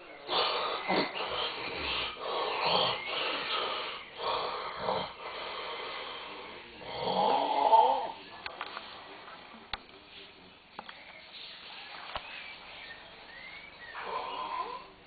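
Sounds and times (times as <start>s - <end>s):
person snoring heavily: 0.2s - 8.2s.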